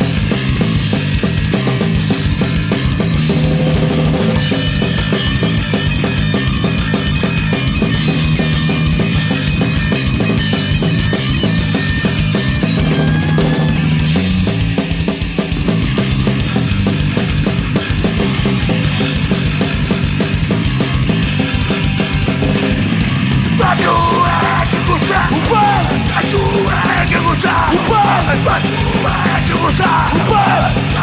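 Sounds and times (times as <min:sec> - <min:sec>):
fast driving drums: 0:00.0 - 0:31.0
punk rock band playing: 0:00.0 - 0:31.0
bending guitar notes: 0:02.9 - 0:14.8.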